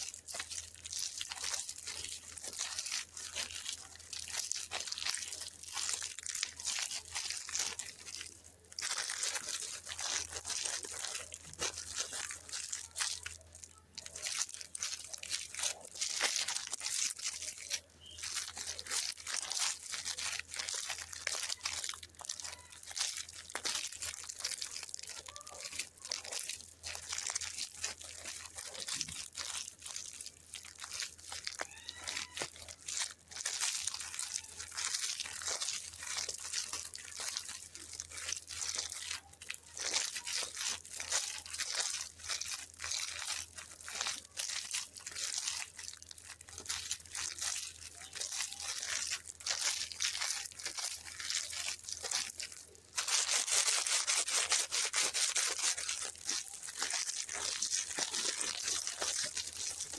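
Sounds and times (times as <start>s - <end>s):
plastic packaging crinkling: 0.0s - 59.9s.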